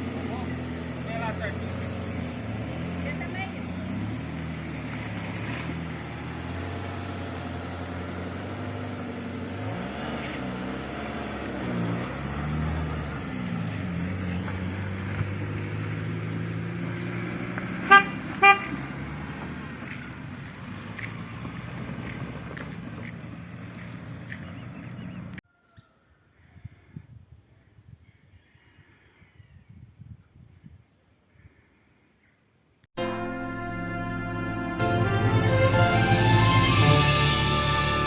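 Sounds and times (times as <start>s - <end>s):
vehicle engine running: 0.0s - 25.4s, 33.2s - 38.0s
horn toots: 17.7s - 19.0s, 33.0s - 38.0s.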